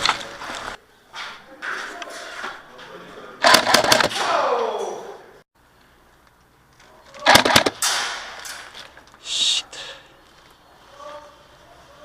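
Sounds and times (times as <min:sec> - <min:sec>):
airsoft gunfire clicks: 0:03.4 - 0:04.3, 0:07.2 - 0:08.2.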